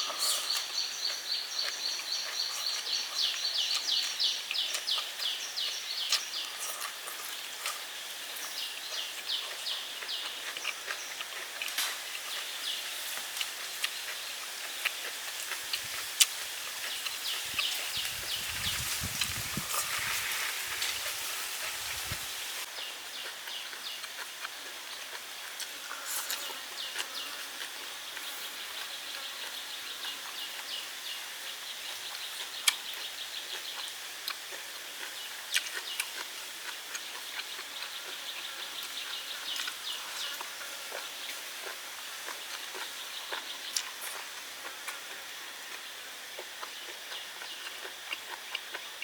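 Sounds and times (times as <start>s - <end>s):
insects chirping: 0.0s - 34.0s.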